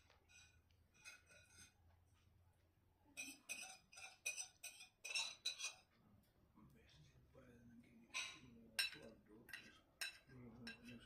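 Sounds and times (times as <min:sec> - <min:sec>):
cutlery clinking against plate: 0:00.0 - 0:01.8, 0:03.2 - 0:05.9, 0:08.1 - 0:11.0.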